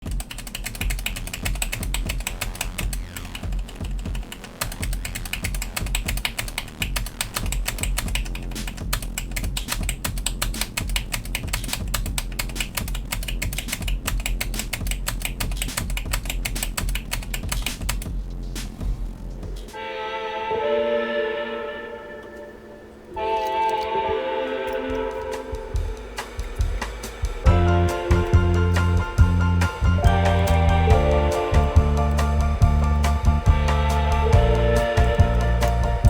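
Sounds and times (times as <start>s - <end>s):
background music: 0.0s - 36.0s
mechanical keyboard typing: 0.1s - 3.6s, 4.6s - 18.0s.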